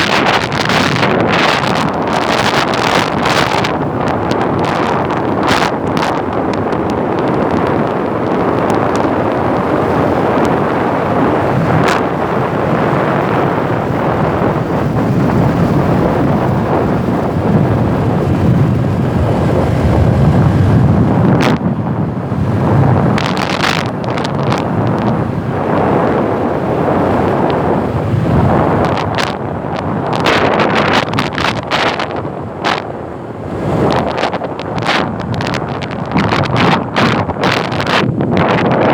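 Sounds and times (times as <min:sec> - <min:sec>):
wind buffeting microphone: 0:00.0 - 0:38.9
sharp knocks and crackles: 0:23.1 - 0:25.2.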